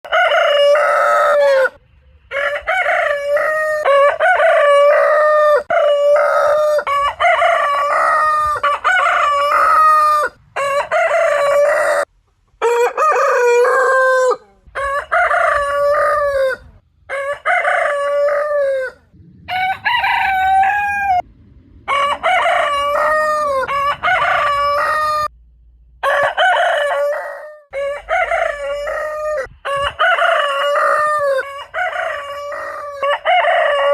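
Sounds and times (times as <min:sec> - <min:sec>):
rooster crowing: 0:00.0 - 0:21.3, 0:21.9 - 0:25.3, 0:26.0 - 0:33.9.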